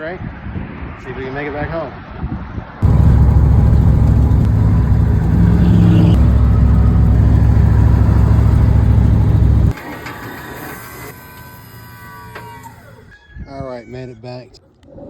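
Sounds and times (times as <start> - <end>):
vehicle engine droning: 2.8 - 9.8.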